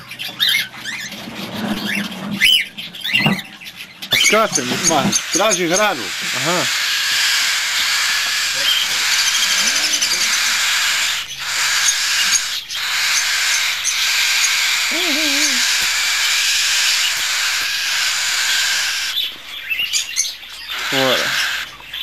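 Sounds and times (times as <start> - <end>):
cockatiel chicks begging chatter: 0.0 - 22.0
low voice sounds: 14.9 - 15.6.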